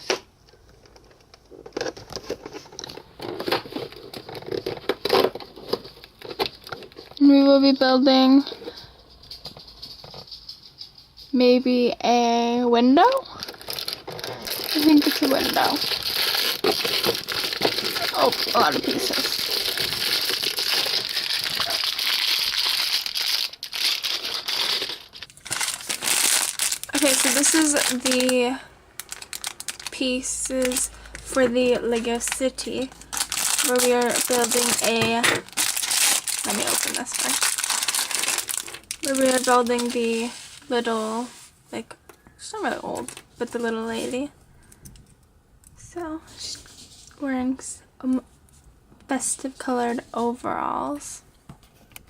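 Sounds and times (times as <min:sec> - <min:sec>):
packaging crinkling: 0:00.6 - 0:07.2, 0:13.2 - 0:40.8, 0:42.9 - 0:44.0.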